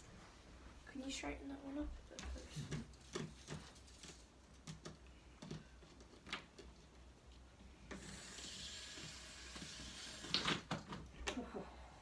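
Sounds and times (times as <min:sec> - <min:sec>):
toy train motor whirring: 0:07.9 - 0:10.6.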